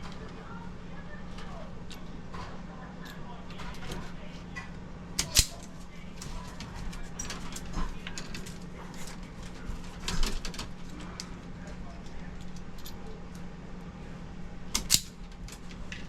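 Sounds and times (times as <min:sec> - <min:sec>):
clicks and scrapes handling wires: 0:01.4 - 0:13.5.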